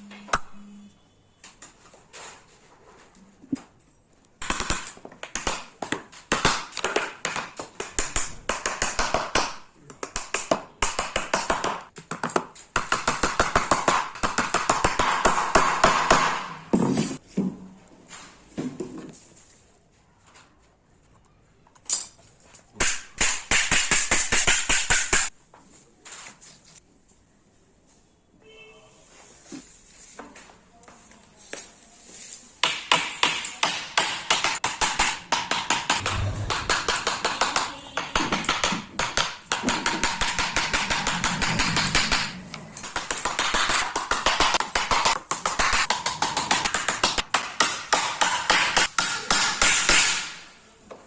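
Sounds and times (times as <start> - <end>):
sharp hammer blows: 36.0 - 38.3.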